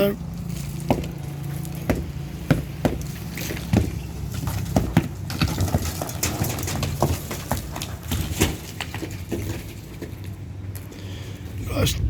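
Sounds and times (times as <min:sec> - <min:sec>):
demolition knocks on a wall: 0:00.9 - 0:01.2, 0:01.8 - 0:09.6.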